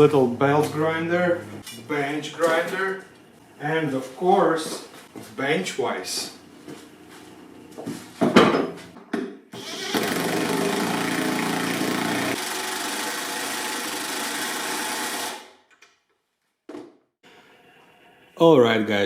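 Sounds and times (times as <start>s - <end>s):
power tool motor running: 9.6s - 15.6s.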